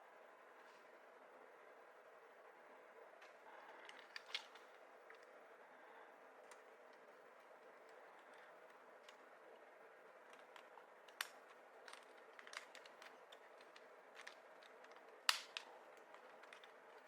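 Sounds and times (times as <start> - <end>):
plastic parts snapping: 3.8 - 5.3, 10.2 - 17.0
hard plastic parts clicking: 10.2 - 17.0.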